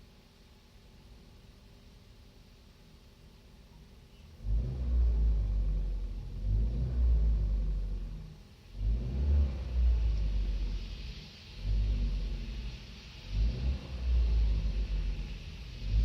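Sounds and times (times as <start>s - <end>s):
car engine revving: 4.3s - 16.0s.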